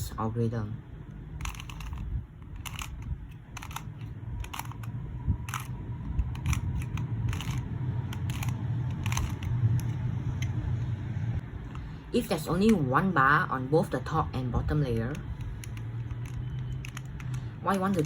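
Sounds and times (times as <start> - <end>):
puzzle cube clicking turns: 1.3 - 10.6, 14.8 - 18.0.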